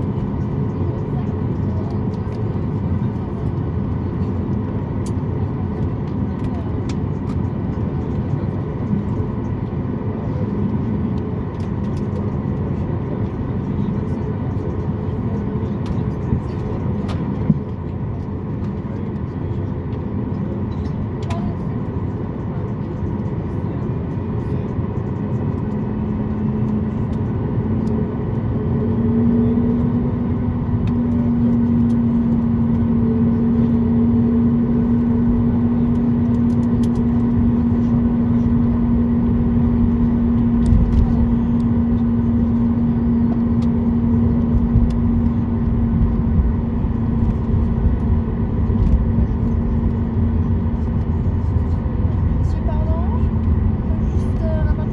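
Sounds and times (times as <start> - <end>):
airplane cabin rumble: 0.0 - 54.9.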